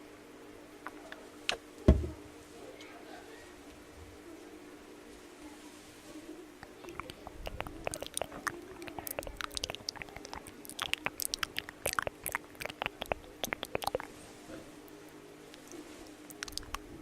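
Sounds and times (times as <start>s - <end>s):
fingers working sticky lotion: 6.6s - 14.1s, 15.5s - 17.0s.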